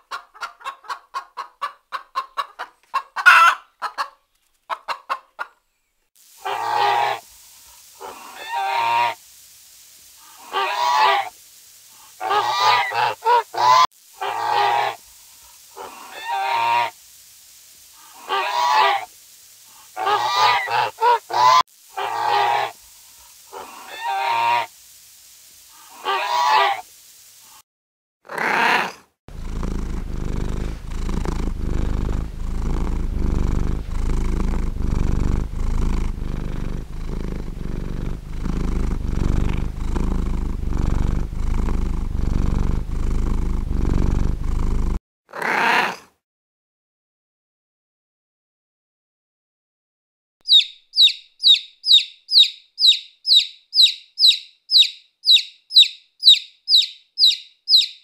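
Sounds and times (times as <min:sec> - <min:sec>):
short animal calls: 0:06.4 - 0:07.3, 0:08.0 - 0:09.2, 0:10.2 - 0:11.3, 0:12.2 - 0:15.0, 0:18.0 - 0:19.1, 0:20.0 - 0:22.8, 0:23.5 - 0:24.7, 0:25.8 - 0:26.8, 0:50.5 - 0:58.0
cat purring: 0:29.3 - 0:45.0.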